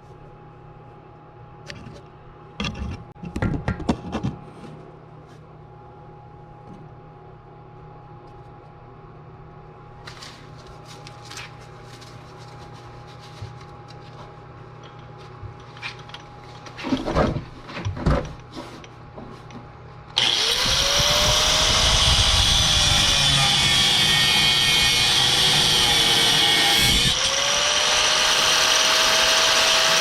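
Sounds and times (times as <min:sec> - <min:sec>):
power tool cutting metal: 0:20.2 - 0:30.0.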